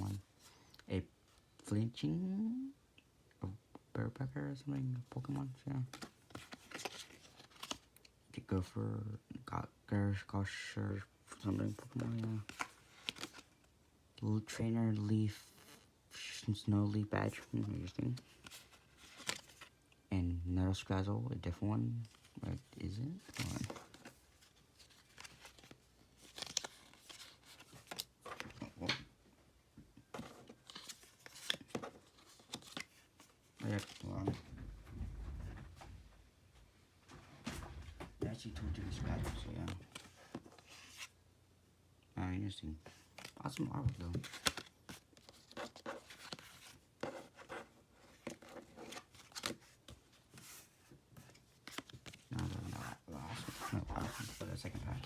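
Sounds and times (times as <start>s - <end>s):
trading cards rustling: 4.6s - 8.1s, 11.3s - 13.7s, 17.2s - 19.8s, 21.8s - 29.0s, 30.0s - 34.5s, 38.2s - 41.2s, 42.8s - 55.0s.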